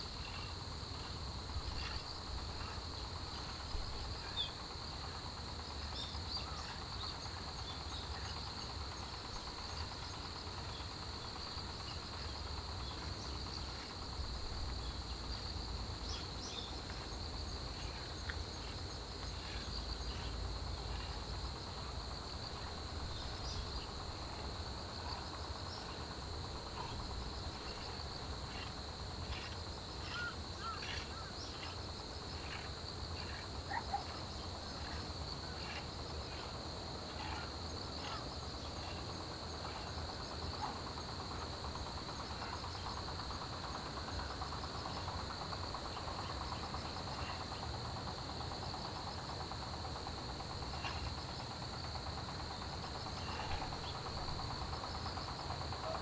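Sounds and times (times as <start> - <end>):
crickets trilling: 0.0 - 56.0
higher pulsing insect chirp: 0.0 - 56.0
scattered faint chirps: 17.8 - 40.6.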